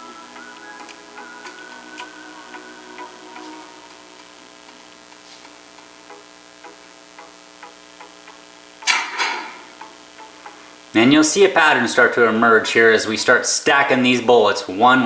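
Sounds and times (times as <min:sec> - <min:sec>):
ticking beat: 0:00.0 - 0:08.8
soft background music: 0:00.0 - 0:13.4
air rifle shot: 0:08.8 - 0:09.7.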